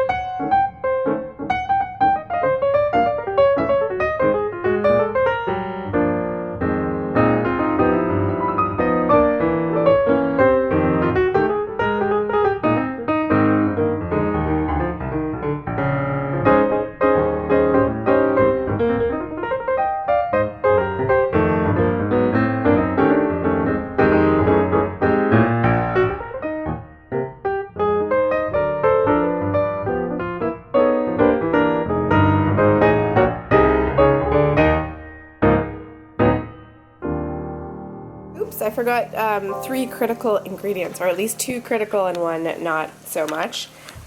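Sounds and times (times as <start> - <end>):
piano music: 0.0 - 43.6.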